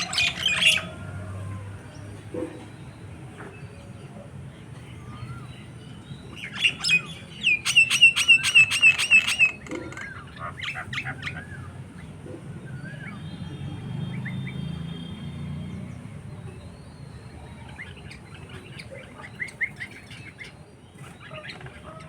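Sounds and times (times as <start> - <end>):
rapid sharp bird calls: 6.4 - 15.2.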